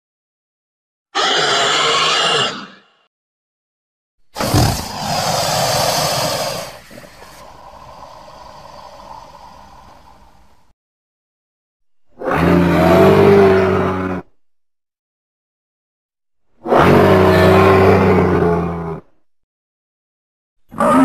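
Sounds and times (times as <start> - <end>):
low creature growling call: 1.2 - 3.0, 4.4 - 10.5, 12.2 - 14.3, 16.6 - 19.1, 20.7 - 21.0.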